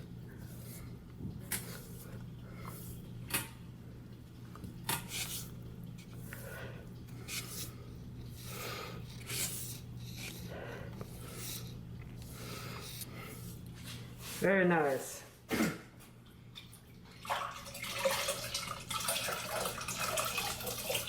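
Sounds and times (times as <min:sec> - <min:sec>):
steady low hum: 0:00.0 - 0:17.3
sponge wiping across tiles: 0:05.0 - 0:06.6, 0:07.2 - 0:10.5, 0:11.1 - 0:15.1.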